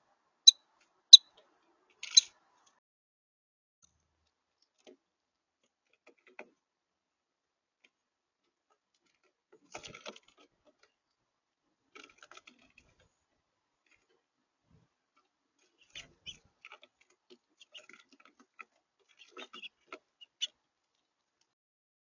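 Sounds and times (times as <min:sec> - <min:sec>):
birds pecking at a feeder: 0:07.8 - 0:11.2, 0:11.9 - 0:13.1, 0:15.1 - 0:21.5.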